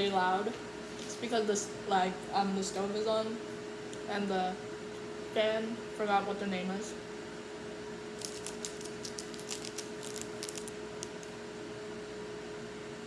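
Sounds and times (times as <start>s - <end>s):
exhaust fan humming: 0.0s - 13.0s
quick crackling clicks: 8.2s - 11.3s.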